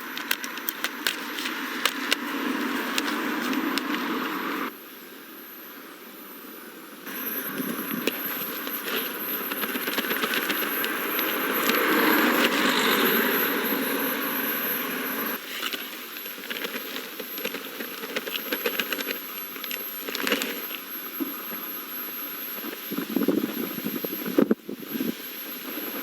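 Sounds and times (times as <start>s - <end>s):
clicks and crackles: 0.0s - 4.1s, 7.5s - 12.6s, 15.4s - 21.6s
gas burner flame roaring: 0.0s - 4.7s, 7.1s - 21.4s.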